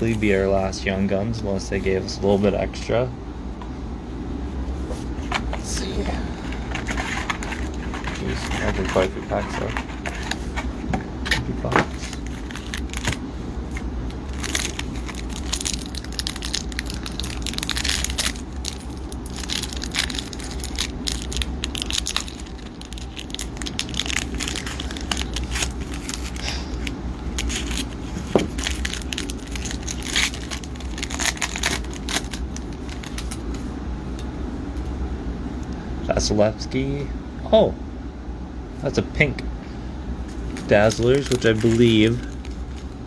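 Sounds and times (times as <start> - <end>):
steady low hum: 0.0 - 43.0
cards handled: 6.5 - 33.7, 40.3 - 43.0
foil wrappers crinkling and tearing: 6.6 - 10.7, 11.7 - 33.6, 40.4 - 43.0.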